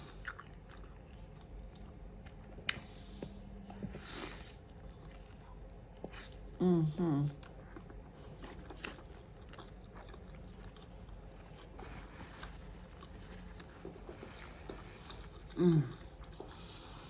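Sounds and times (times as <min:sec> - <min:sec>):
person chewing food: 0:00.0 - 0:06.6, 0:07.3 - 0:17.0.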